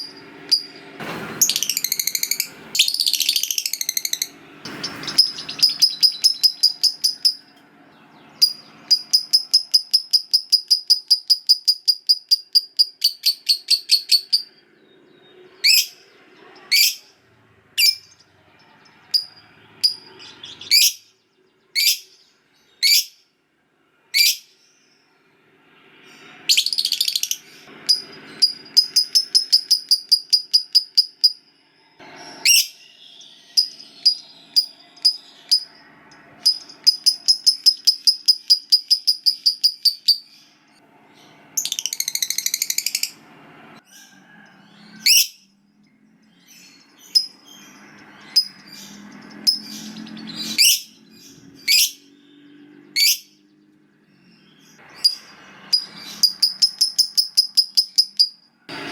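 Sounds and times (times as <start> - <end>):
bird sharp down-sweeping chirps: 0.0 - 17.2, 24.0 - 43.3, 44.0 - 58.9
bird rapid shrill chatter: 1.4 - 7.4, 8.4 - 14.6, 26.5 - 31.4, 33.5 - 40.4, 54.9 - 58.4.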